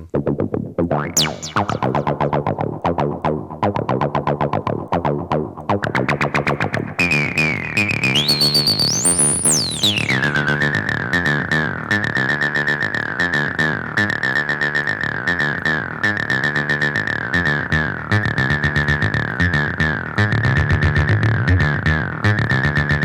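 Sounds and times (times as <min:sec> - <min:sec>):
distorted acid bassline: 0:01.0 - 0:23.0
resonant whistling tone: 0:07.0 - 0:11.2.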